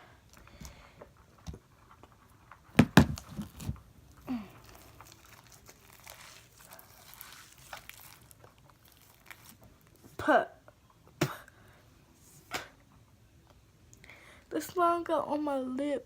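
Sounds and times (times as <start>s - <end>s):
faint crackling: 0.3s - 11.6s.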